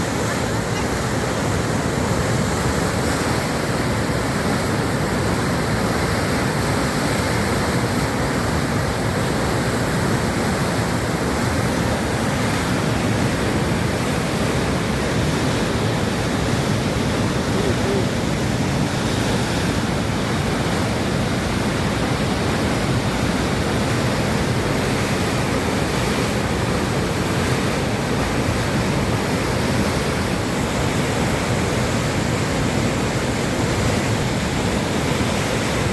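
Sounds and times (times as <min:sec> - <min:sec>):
waterfall rushing: 0:00.0 - 0:35.9.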